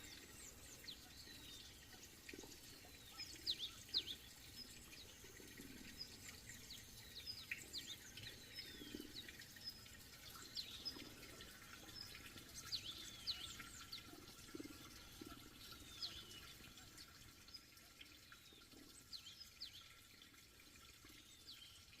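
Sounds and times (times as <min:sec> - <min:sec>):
faint birds chirping: 0:00.0 - 0:22.0
trickle of water: 0:00.0 - 0:22.0.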